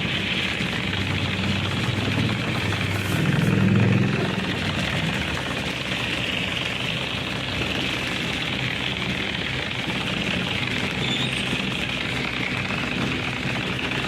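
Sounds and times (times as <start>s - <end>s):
pressure washer pump hum: 0.0s - 14.0s
water spray hissing: 2.5s - 4.1s.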